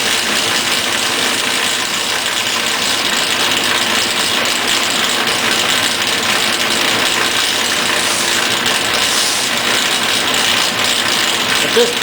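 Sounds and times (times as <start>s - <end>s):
machine motor running: 0.0s - 12.0s
sandpaper rubbing on wood: 8.0s - 8.4s, 9.0s - 9.5s.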